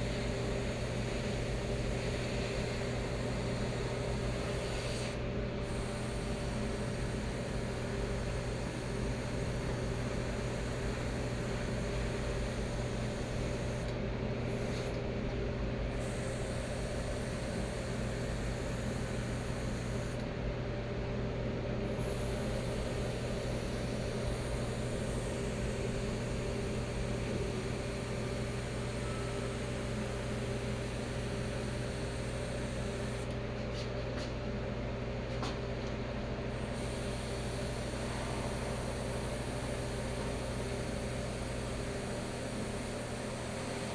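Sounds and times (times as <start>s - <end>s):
air compressor humming: 0.0s - 43.9s.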